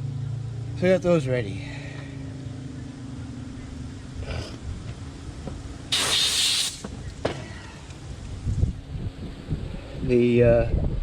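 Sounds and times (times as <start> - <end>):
pressurised gas hissing: 5.9 - 6.9.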